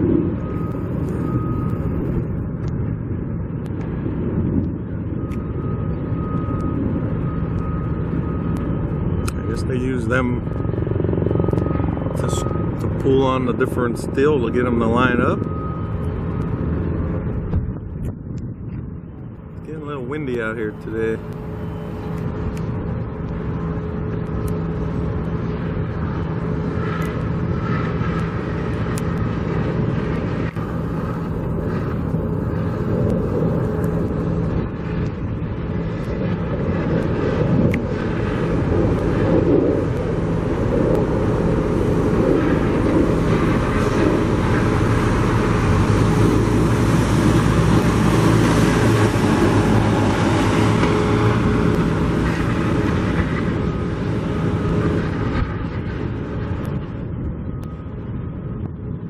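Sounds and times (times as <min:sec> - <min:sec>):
traffic noise with low hum: 0:00.0 - 0:59.0
wind on microphone: 0:00.0 - 0:59.0.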